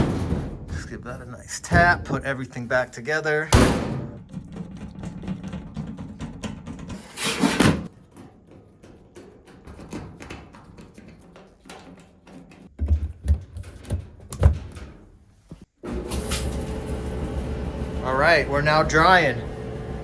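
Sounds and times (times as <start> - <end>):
heavy thumps: 0.0 - 2.4, 3.5 - 6.9.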